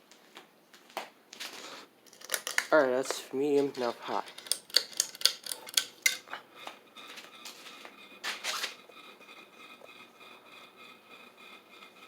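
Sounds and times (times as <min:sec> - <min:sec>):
ceiling fan motor whine: 0:00.0 - 0:12.0.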